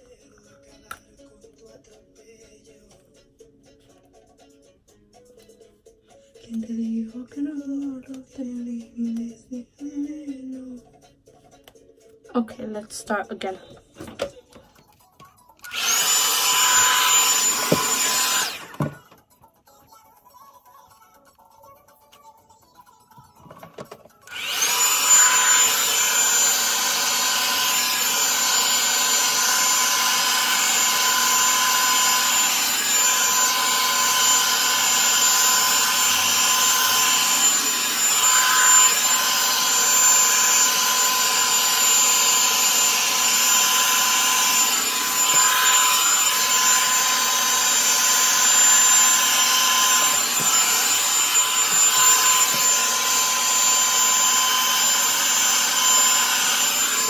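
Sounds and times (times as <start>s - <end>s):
hot-air brush dryer blowing: 15.6s - 19.0s, 24.3s - 57.0s.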